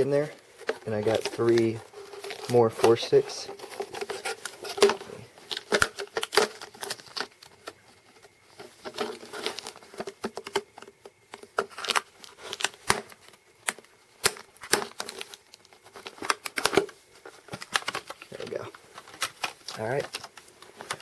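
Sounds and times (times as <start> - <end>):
plastic packaging rustling: 0.0 - 21.0.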